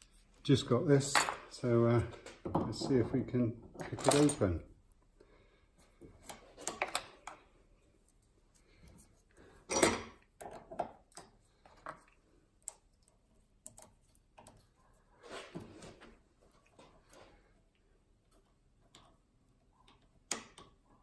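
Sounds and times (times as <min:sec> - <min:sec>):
lock picking clicks and scrapes: 0:06.2 - 0:07.4.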